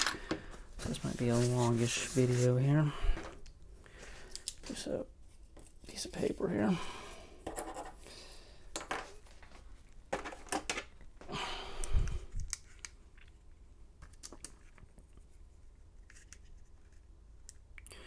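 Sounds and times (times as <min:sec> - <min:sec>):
paper rustling: 0:00.8 - 0:02.7.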